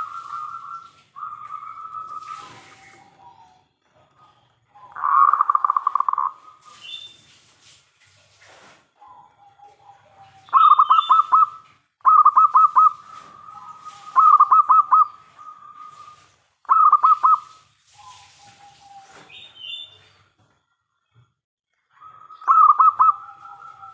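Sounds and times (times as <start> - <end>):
dove cooing: 0.0 - 6.8, 9.0 - 19.2, 21.9 - 23.9.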